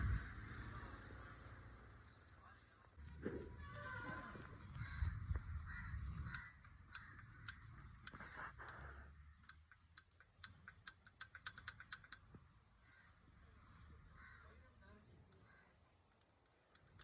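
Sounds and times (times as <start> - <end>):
engine valve train ticking: 9.4 - 12.3.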